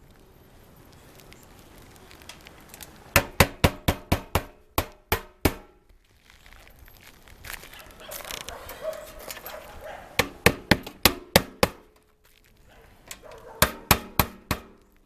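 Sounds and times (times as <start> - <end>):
hammer striking roofing nails: 3.1 - 5.8, 10.2 - 12.0, 13.6 - 14.8.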